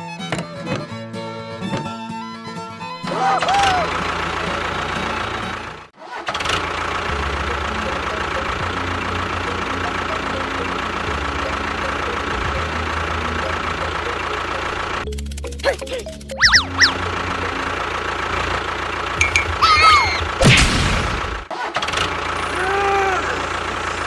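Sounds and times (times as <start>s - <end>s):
small motor whining: 6.4s - 15.1s.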